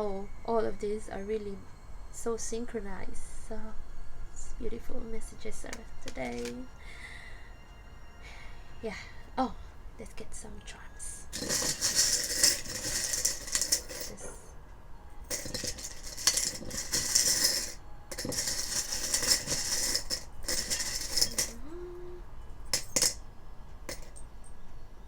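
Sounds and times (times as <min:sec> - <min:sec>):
small charms rattling: 0:06.0 - 0:06.6, 0:11.4 - 0:14.3, 0:15.3 - 0:21.6, 0:22.8 - 0:23.2.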